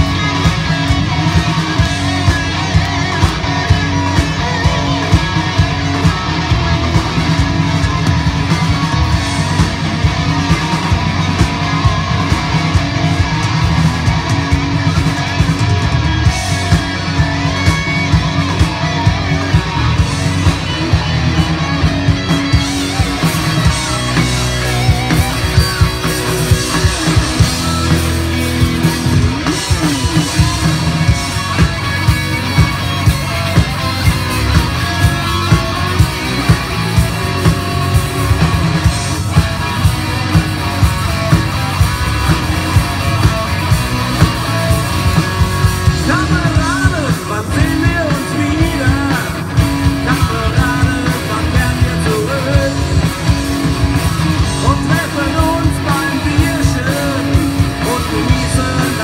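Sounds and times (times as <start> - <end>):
live band playing: 0.0 - 59.0.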